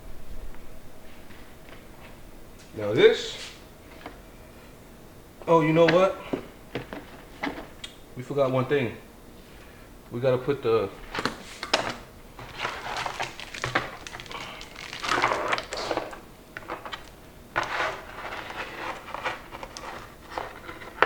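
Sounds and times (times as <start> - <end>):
packaging crinkling and rustling: 11.1 - 21.0.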